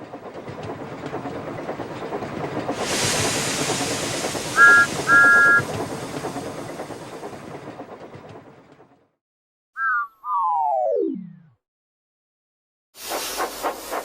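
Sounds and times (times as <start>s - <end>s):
steam locomotive clattering on rails: 0.0s - 9.1s, 13.0s - 14.0s
hiss of steam: 2.7s - 7.3s, 13.0s - 14.0s.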